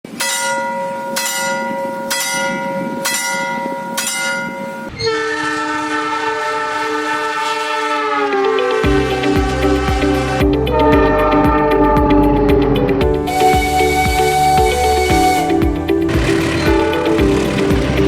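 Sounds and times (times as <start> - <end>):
railway signal bell ringing: 0.1 - 5.4, 16.1 - 18.0
train horn blast: 4.8 - 18.0.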